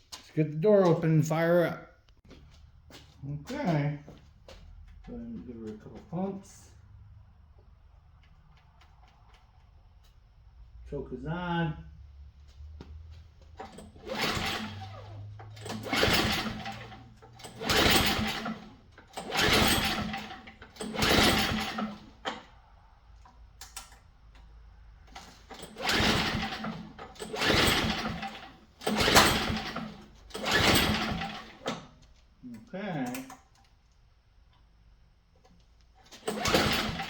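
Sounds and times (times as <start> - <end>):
engine turning over: 12.5 - 22.5, 25.0 - 31.9, 36.0 - 37.0
recoil starter cord pulled: 13.6 - 22.5, 25.1 - 31.9, 36.0 - 37.0.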